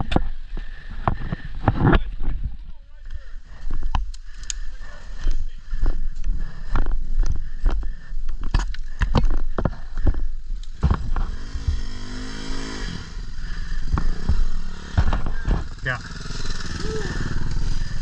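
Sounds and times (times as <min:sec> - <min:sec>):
low rumble: 0:00.0 - 0:16.2
knocks and thumps: 0:07.7 - 0:12.0, 0:13.7 - 0:15.8
motorcycle engine revving: 0:08.9 - 0:18.0.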